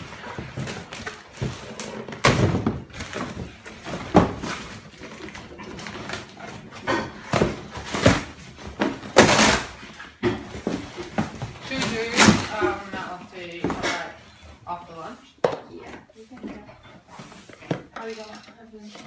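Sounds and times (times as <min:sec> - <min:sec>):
knocks and thumps in room: 0:00.0 - 0:14.2.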